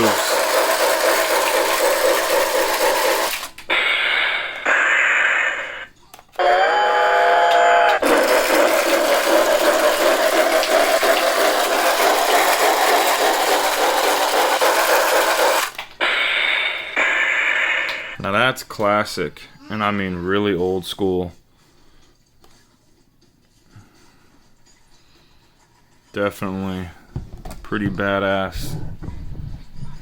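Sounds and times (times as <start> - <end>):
rhythmic train chugging: 0.0 - 5.8, 6.4 - 18.2
steady train whistle: 6.4 - 8.3.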